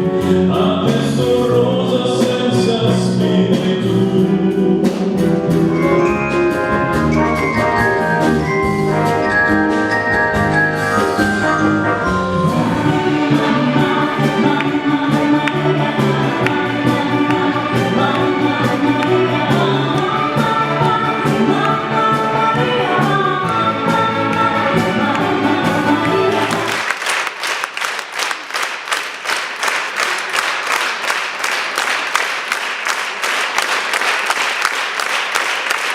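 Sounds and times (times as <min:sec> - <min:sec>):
singing voices: 0:00.0 - 0:05.9, 0:12.4 - 0:26.9
orchestra playing: 0:00.0 - 0:32.1
audience applause: 0:24.7 - 0:35.9.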